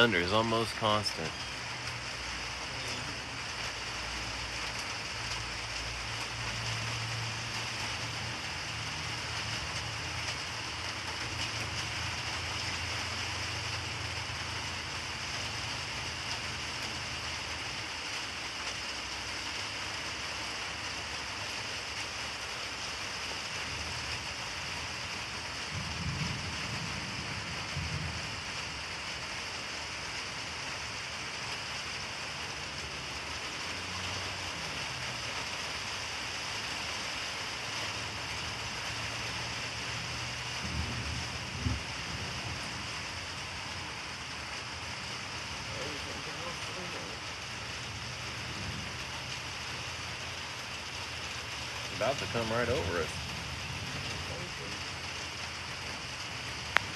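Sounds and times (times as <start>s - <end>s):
steady rain hissing: 0.0s - 56.9s
thunder rumbling: 25.6s - 29.0s, 40.5s - 44.0s, 47.9s - 49.6s.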